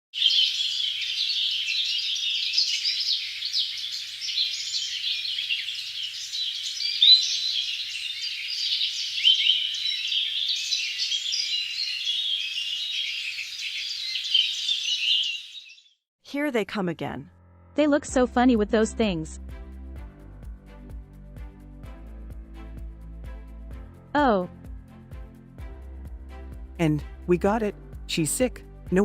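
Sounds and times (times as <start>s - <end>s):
small birds chirping: 0.1s - 16.0s.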